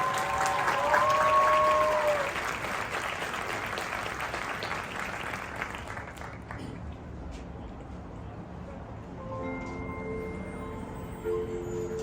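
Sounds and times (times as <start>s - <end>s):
audience applauding: 0.0s - 6.6s.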